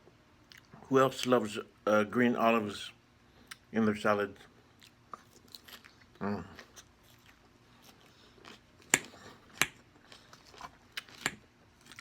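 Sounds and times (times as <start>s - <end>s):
biting and chewing salad: 0.4s - 1.4s, 4.4s - 12.0s.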